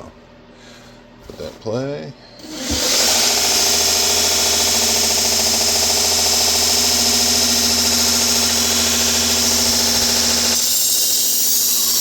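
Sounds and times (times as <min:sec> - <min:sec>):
belt grinder motor whine: 0:02.4 - 0:12.0.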